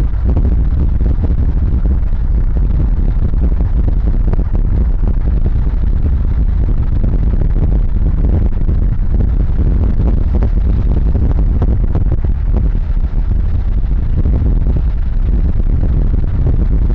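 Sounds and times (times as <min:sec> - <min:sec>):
road and wind noise: 0:00.0 - 0:16.9.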